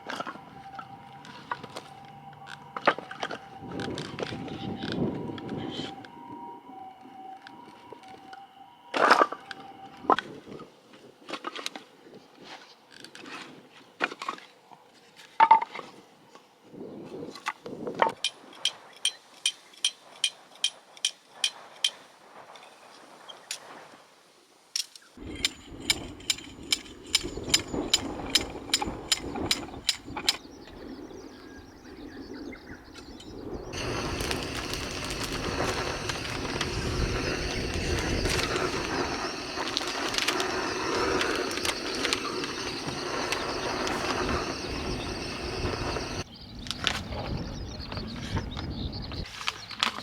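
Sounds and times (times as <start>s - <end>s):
steady rushing background: 33.7s - 46.3s.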